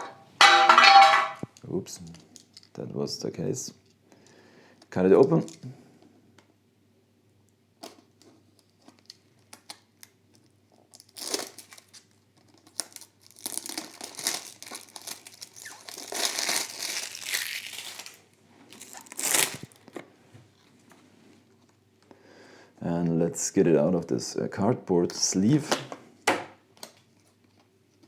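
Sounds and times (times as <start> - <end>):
packaging crinkling and tearing: 7.8 - 20.0.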